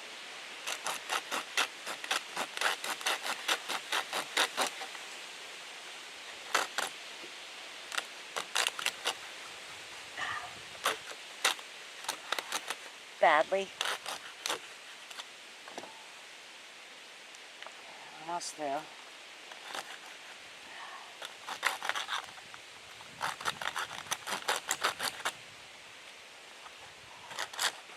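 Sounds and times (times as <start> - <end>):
hand saw rasping through plastic: 0.6 - 4.9, 13.8 - 15.2, 21.2 - 22.3, 23.2 - 25.3, 27.3 - 27.9.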